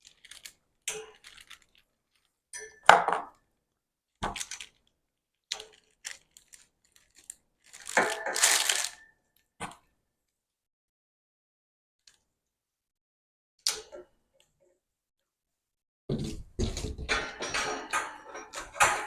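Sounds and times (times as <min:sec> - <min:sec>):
crinkling: 0:00.0 - 0:02.4, 0:05.5 - 0:09.0
metal parts knocking and clinking: 0:16.7 - 0:19.0
metal clattering: 0:16.9 - 0:19.0.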